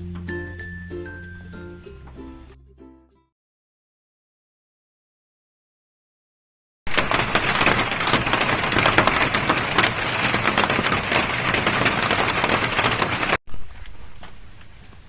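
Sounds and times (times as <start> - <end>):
wood fire crackling and popping: 6.9 - 13.4.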